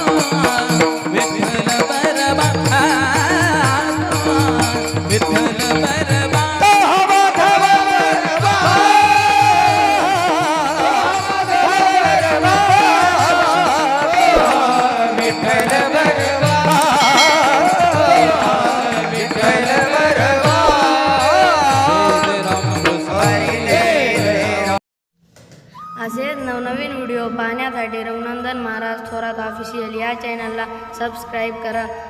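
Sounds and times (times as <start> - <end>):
drum beat: 0.0 - 24.8
men singing devotional song: 0.0 - 24.8
sustained held tones: 14.4 - 22.9.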